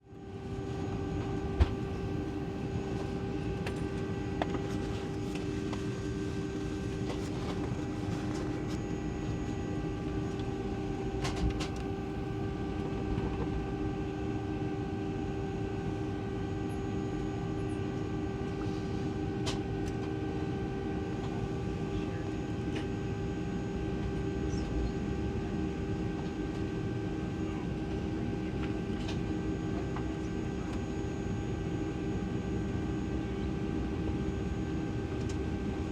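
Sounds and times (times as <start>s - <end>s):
jet engines humming in cabin: 0.0s - 35.9s
steady whining tones: 0.2s - 15.8s.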